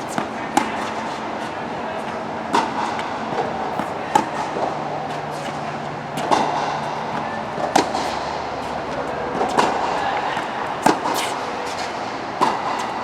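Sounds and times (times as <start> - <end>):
racket striking ball: 0.0 - 13.0
steady background noise: 0.0 - 13.0.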